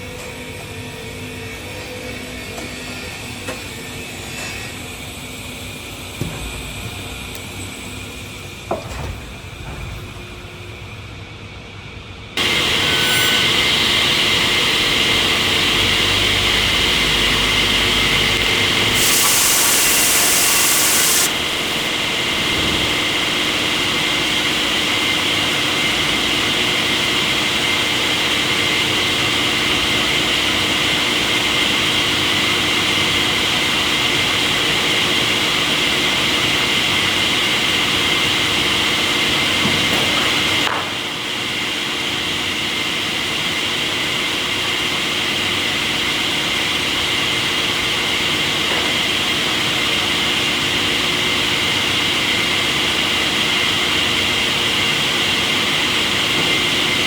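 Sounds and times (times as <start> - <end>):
sawmill machinery running: 0.1 - 57.0
sharp hiss: 18.8 - 21.9.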